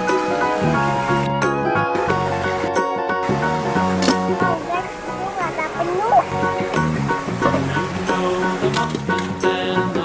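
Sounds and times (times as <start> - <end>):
bright melodic background music: 0.0 - 10.0.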